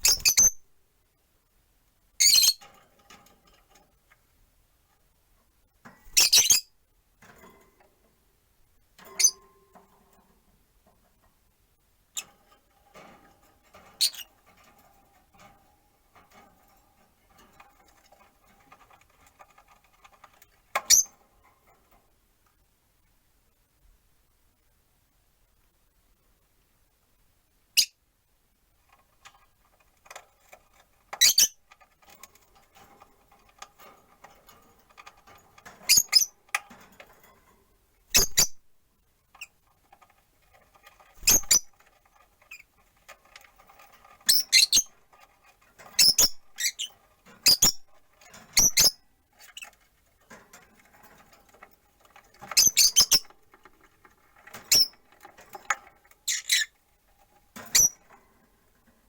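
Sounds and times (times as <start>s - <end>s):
lovebirds chirping: 0.0s - 0.6s
faint background noise: 0.0s - 59.0s.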